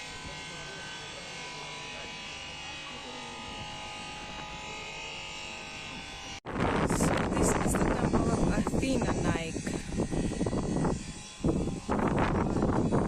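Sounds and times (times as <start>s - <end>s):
wind rushing over microphone: 6.5s - 13.0s
insect buzzing: 6.8s - 13.0s.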